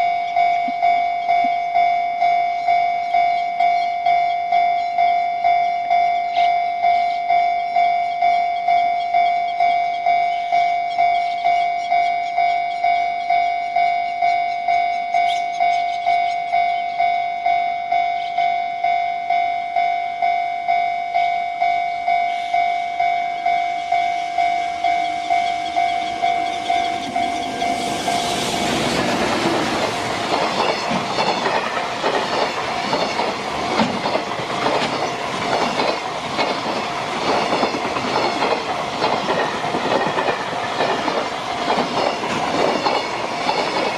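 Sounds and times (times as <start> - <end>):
level crossing warning bell: 0.0 - 43.9
train wheels clattering: 23.9 - 43.9.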